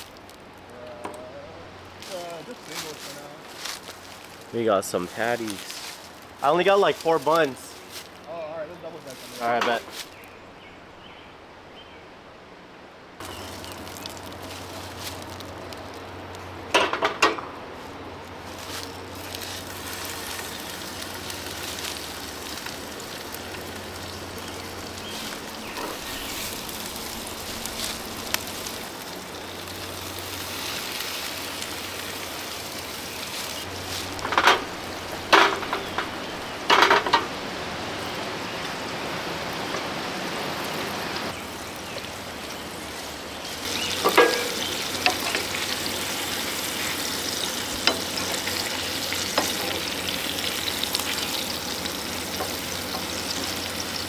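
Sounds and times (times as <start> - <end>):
patties sizzling in a pan: 18.5 - 54.0.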